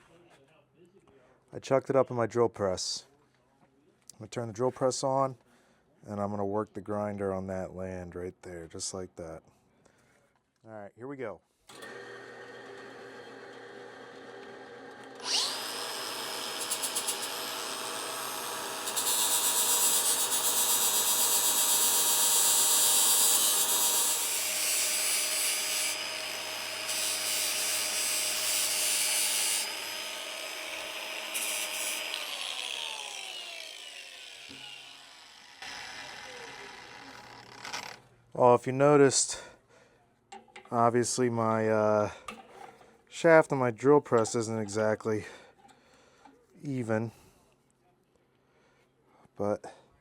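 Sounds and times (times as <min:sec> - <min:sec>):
drill press motor: 0:11.7 - 0:38.0
grinder grinding hiss: 0:15.2 - 0:38.0.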